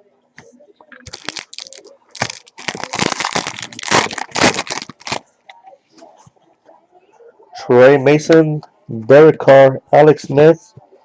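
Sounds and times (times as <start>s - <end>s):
wrapper crinkling and tearing: 0.9s - 5.2s.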